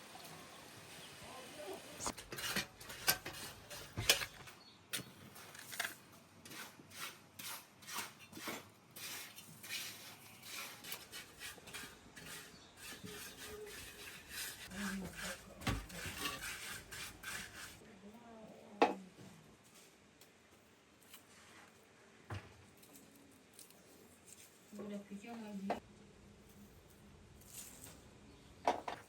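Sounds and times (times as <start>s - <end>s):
kitchen utensils clinking: 2.0s - 4.5s.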